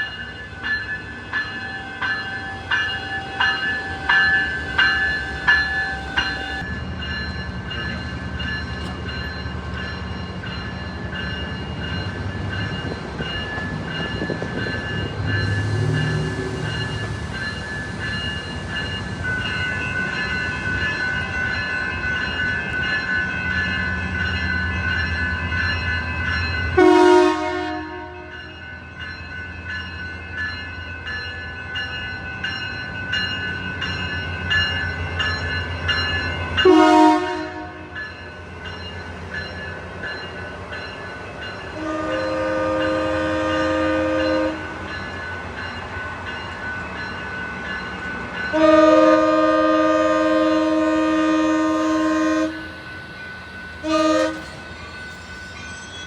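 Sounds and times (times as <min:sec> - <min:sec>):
train hum and whine: 0:00.0 - 0:56.0
train horn: 0:26.8 - 0:28.5, 0:36.6 - 0:38.0, 0:41.7 - 0:44.8, 0:48.5 - 0:52.9, 0:53.8 - 0:54.6.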